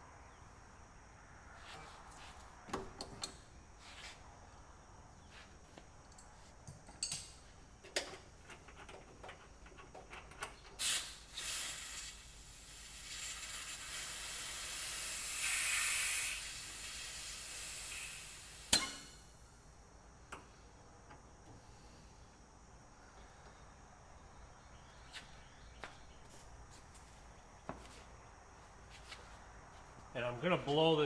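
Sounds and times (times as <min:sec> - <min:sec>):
pressurized gas hissing: 0:10.8 - 0:19.3
tool clicking on metal: 0:18.7 - 0:19.1.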